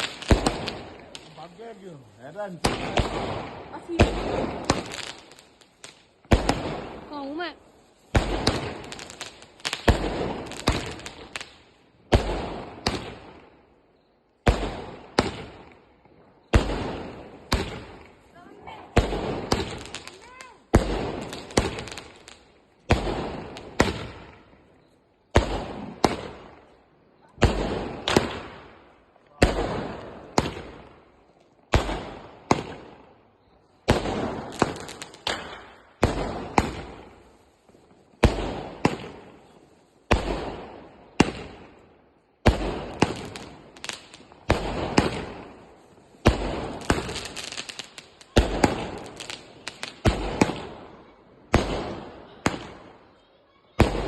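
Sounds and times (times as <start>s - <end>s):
firework cake firing bangs: 0.0s - 13.5s, 14.4s - 15.8s, 16.4s - 24.5s, 25.3s - 31.1s, 31.7s - 37.4s, 38.1s - 53.0s, 53.7s - 54.0s.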